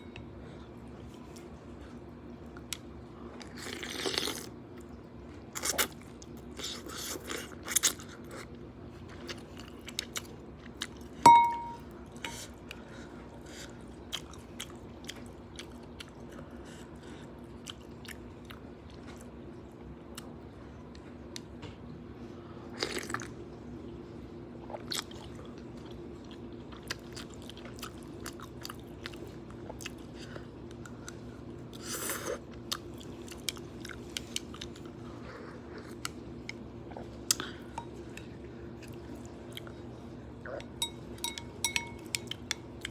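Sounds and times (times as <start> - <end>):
chewing and crunching food: 0.5 - 11.2, 12.0 - 21.8, 22.5 - 23.5, 24.6 - 42.9
sharp clink: 11.3 - 11.8.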